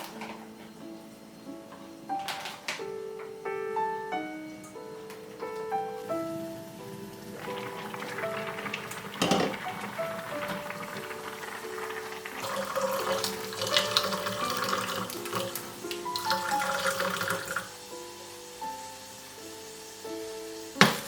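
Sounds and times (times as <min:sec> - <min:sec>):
gentle background music: 0:00.0 - 0:21.0
water running from a tap: 0:06.6 - 0:21.0.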